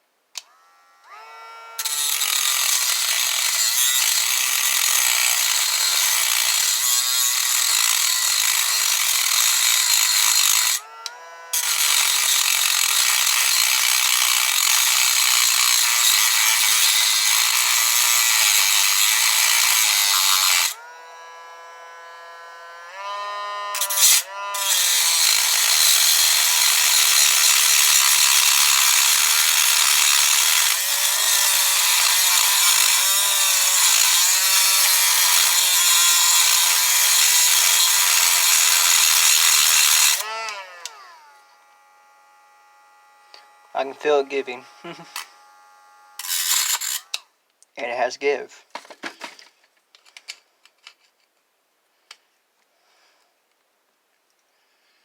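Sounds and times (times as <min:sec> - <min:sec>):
power tool grinding metal: 0:00.4 - 0:49.5.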